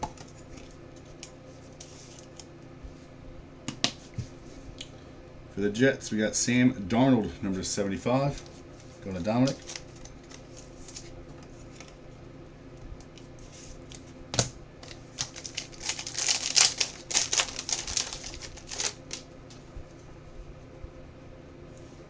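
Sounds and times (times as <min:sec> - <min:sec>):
wrapper and cards crinkling: 0:09.0 - 0:12.0, 0:14.8 - 0:19.3.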